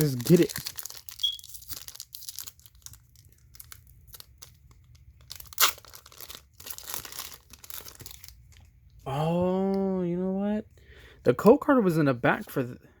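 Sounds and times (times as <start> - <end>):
foil wrapper tearing and crinkling: 0.0 - 8.7.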